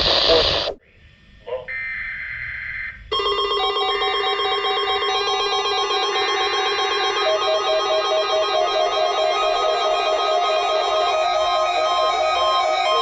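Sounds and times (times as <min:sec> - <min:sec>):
two-tone data warble: 0:00.0 - 0:13.0
layered electronic tones: 0:03.1 - 0:13.0.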